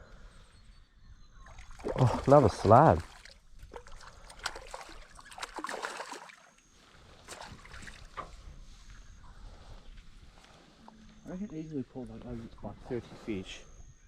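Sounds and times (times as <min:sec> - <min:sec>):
water splashing around a boat: 0:01.5 - 0:09.0.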